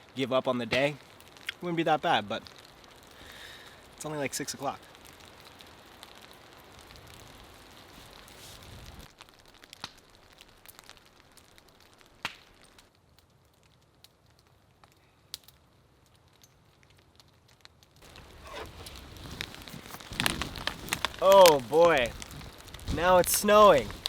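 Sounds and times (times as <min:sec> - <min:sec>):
rain hiss: 0:00.0 - 0:12.6, 0:18.0 - 0:24.0
campfire pops and crackles: 0:00.0 - 0:24.0
raindrops hitting nearby: 0:00.0 - 0:24.0.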